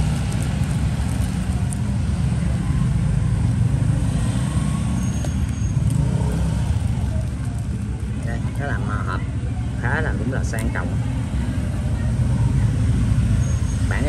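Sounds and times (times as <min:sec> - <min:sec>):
road traffic rumble: 0:00.0 - 0:14.0.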